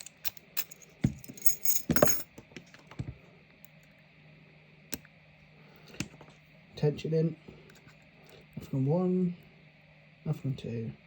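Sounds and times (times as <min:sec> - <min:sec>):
metal clinks of padlock and picks: 0:00.0 - 0:02.3.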